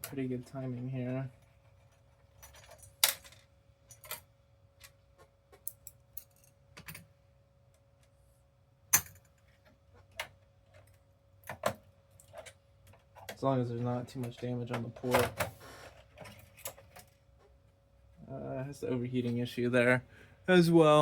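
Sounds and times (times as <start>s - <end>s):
faint steady hum: 0.0s - 21.0s
small parts and tools clicking: 1.4s - 7.0s.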